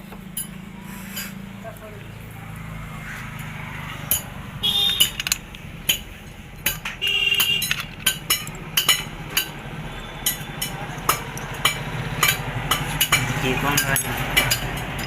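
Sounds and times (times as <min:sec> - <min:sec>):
metal tools clinking: 0:04.0 - 0:09.5, 0:10.1 - 0:15.0.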